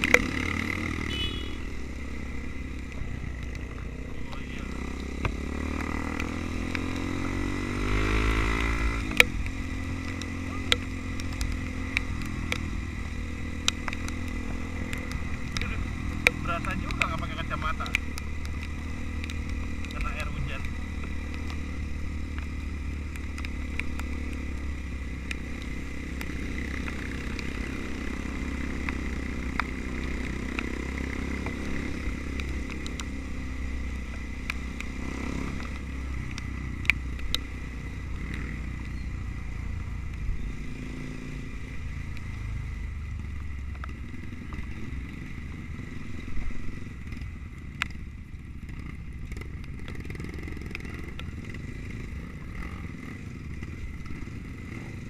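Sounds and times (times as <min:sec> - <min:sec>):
sharp clicks and knocks: 0:00.0 - 0:00.3, 0:08.8 - 0:12.8, 0:13.6 - 0:21.6
motorcycle engine running: 0:00.0 - 0:55.0.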